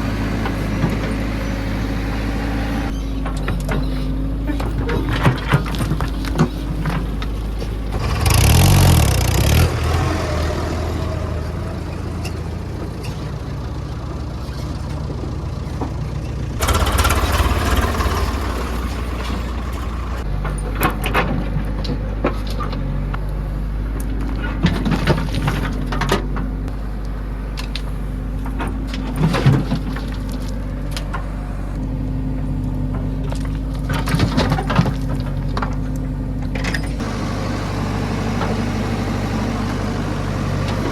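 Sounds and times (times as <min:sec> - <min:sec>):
diesel engine revving under load: 0:00.0 - 0:21.8, 0:36.8 - 0:40.9.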